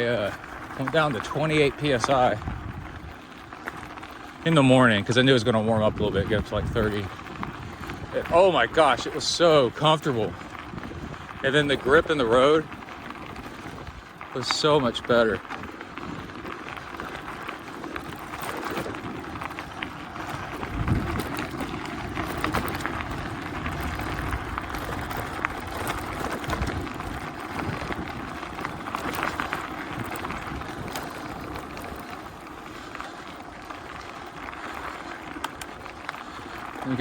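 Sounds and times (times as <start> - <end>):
bike tyres crunching on gravel: 0.0 - 37.0
stones pinging off tyres: 0.0 - 37.0
wind on microphone: 1.1 - 3.2, 5.7 - 14.1, 17.8 - 32.4.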